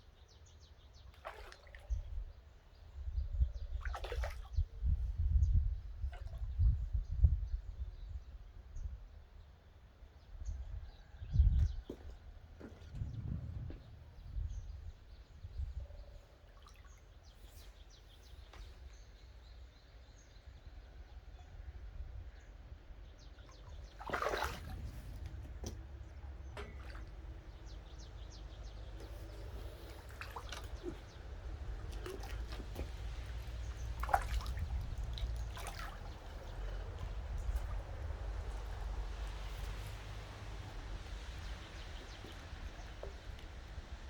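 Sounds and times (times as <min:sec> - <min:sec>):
water splashing and dripping: 0:01.1 - 0:02.3, 0:03.7 - 0:04.7, 0:06.0 - 0:06.9, 0:16.4 - 0:17.8, 0:23.3 - 0:44.0.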